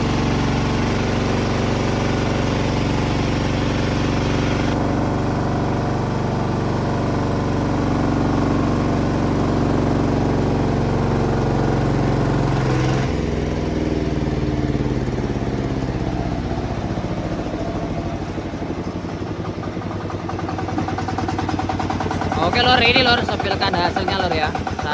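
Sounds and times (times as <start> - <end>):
sawmill engine running: 0.0 - 24.9
band saw blade cutting log: 11.4 - 13.3.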